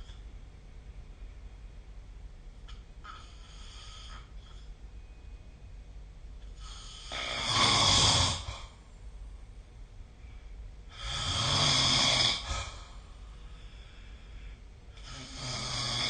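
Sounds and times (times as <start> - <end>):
faint breath: 3.0 - 5.5, 10.1 - 11.2, 12.4 - 15.3
loud buzzing snore: 6.6 - 8.8, 10.9 - 13.0, 15.0 - 16.0.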